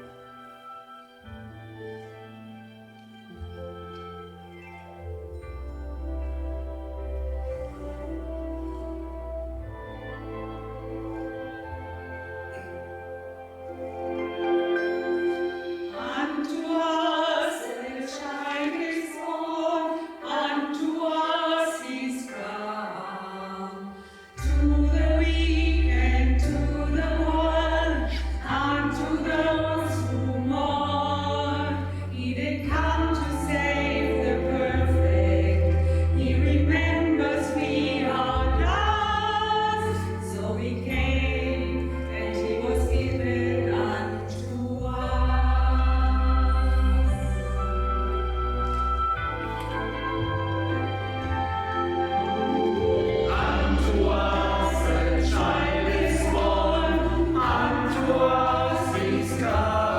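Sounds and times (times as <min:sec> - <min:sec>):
choir singing: 0:05.8 - 0:59.9
deep sustained bass notes: 0:39.8 - 0:59.9.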